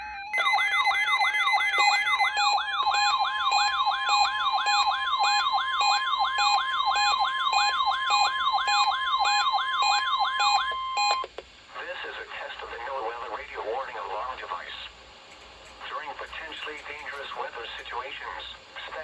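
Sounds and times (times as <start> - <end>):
downward sweeping alarm siren: 0.0 - 11.2
steady warning alarm tone: 0.0 - 11.3, 15.3 - 18.1.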